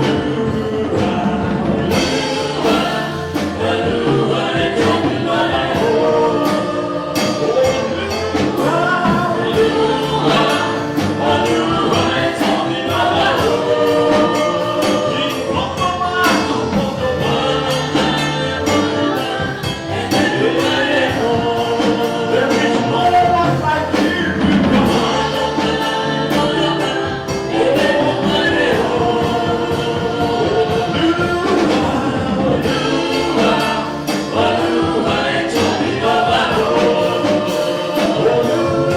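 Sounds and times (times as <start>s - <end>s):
choir singing gospel over band: 0.0s - 38.9s.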